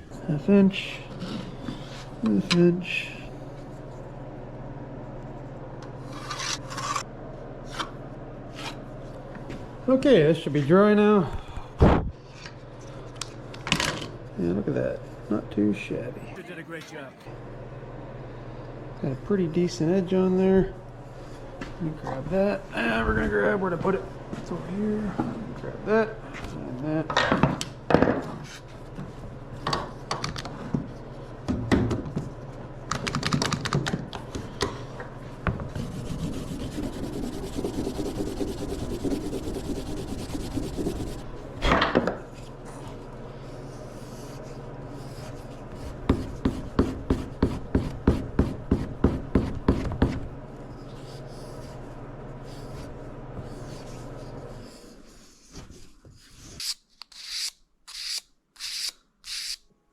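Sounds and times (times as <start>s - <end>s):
steady low hum: 0.0s - 56.4s
gouge carving wood: 35.8s - 41.3s, 46.1s - 49.8s.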